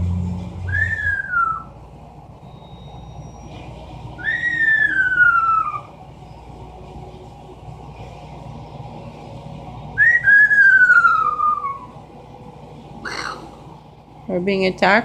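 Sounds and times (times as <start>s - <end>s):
parrot whistling: 4.2s - 5.9s, 13.0s - 13.8s.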